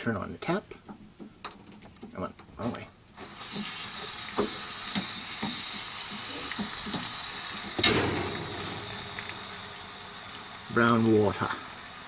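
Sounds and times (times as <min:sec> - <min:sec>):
water and air hissing from drain: 0:03.2 - 0:12.0
water gushing: 0:03.2 - 0:12.0.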